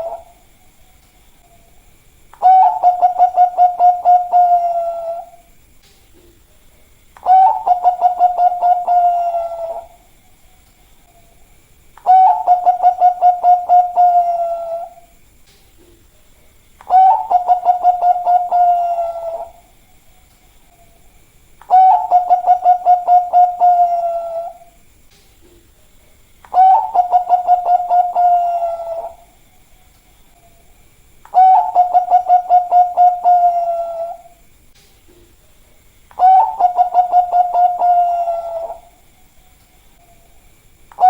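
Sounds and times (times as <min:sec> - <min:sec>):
dove cooing: 0:00.0 - 0:00.4, 0:02.4 - 0:05.5, 0:07.2 - 0:10.1, 0:12.0 - 0:15.1, 0:16.8 - 0:19.7, 0:21.6 - 0:24.8, 0:26.5 - 0:29.4, 0:31.3 - 0:34.4, 0:36.1 - 0:39.0.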